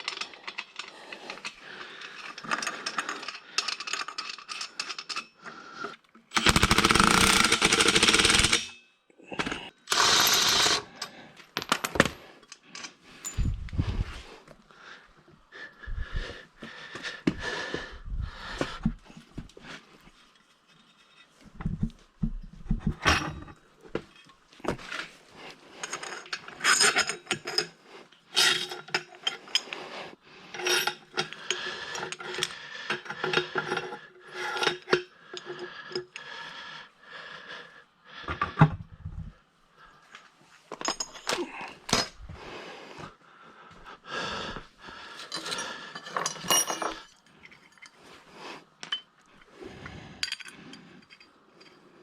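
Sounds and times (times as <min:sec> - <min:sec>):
metal tools clinking and knocking: 0:00.0 - 0:05.4, 0:09.4 - 0:14.2, 0:18.1 - 0:25.2, 0:25.8 - 0:27.8, 0:40.1 - 0:42.4, 0:45.2 - 0:48.0, 0:48.8 - 0:51.9.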